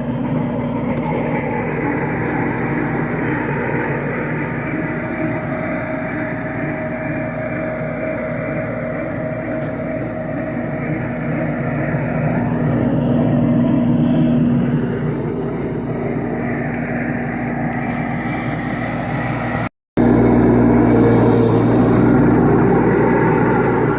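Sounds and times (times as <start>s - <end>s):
skid steer engine under load: 0.0s - 23.9s.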